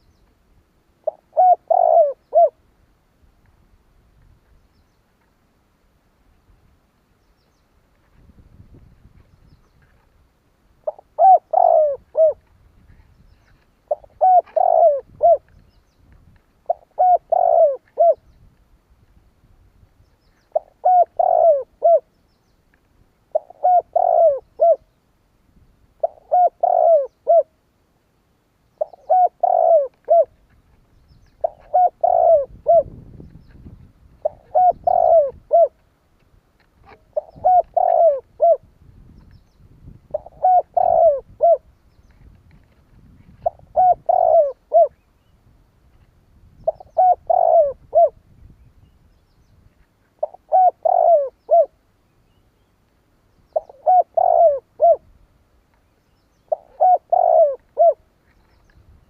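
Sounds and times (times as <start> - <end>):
dove cooing: 1.0 - 2.6, 10.8 - 13.0, 13.9 - 15.5, 16.7 - 18.2, 20.5 - 22.1, 23.3 - 24.9, 26.0 - 27.5, 28.8 - 30.4, 31.4 - 33.0, 34.2 - 35.8, 36.8 - 38.7, 40.1 - 41.7, 43.3 - 45.0, 46.6 - 48.2, 50.2 - 51.8, 53.5 - 55.1, 56.4 - 58.1.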